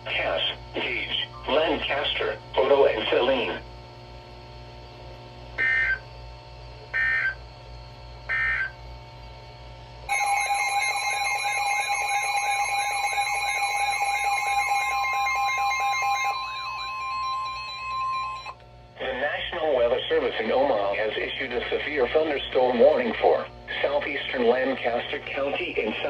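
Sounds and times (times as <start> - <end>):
loud electronic alert tone: 5.6 - 6.0, 7.0 - 7.4, 8.3 - 8.7, 10.1 - 18.6
short digital squawks: 5.6 - 6.0, 7.0 - 7.4, 8.3 - 8.7.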